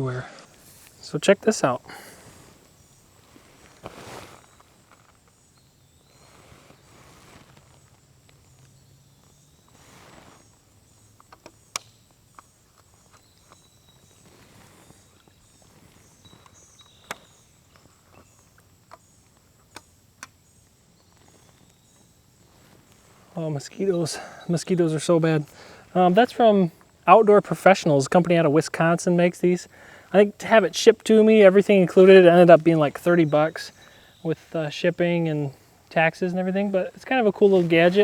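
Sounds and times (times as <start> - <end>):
faint footsteps: 0.3 - 11.5
handling noises: 0.4 - 27.0
faint high insect trilling: 0.5 - 38.0.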